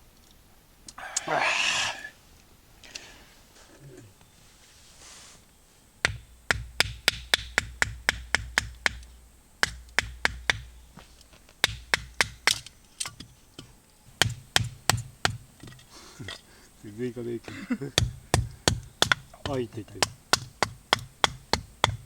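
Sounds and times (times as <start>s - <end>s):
sharp knocks: 6.0s - 10.8s, 11.6s - 15.8s, 18.0s - 22.0s.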